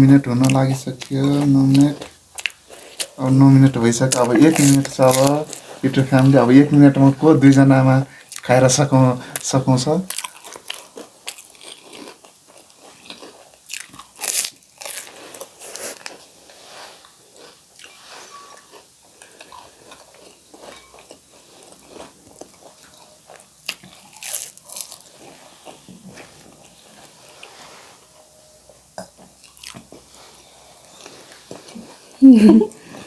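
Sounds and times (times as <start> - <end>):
crunching crisp shells: 0.3 - 6.4, 9.3 - 16.3, 17.3 - 25.8
chewing: 0.4 - 6.1, 10.1 - 16.3, 17.0 - 27.6, 29.0 - 33.0.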